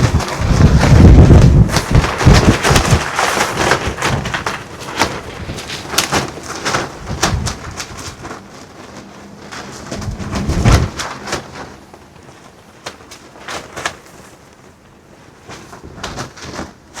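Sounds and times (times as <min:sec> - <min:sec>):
wind buffeting microphone: 0:00.0 - 0:13.4
clothing flapping in wind: 0:00.0 - 0:17.0.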